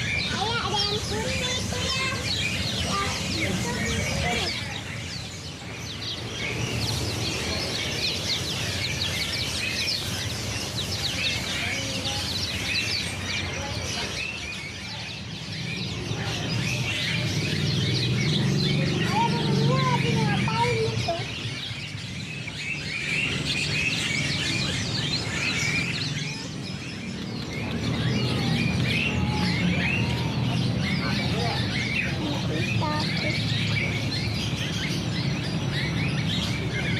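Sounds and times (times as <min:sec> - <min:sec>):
low background murmur: 0:00.0 - 0:36.9
songbirds chirping: 0:00.0 - 0:36.9.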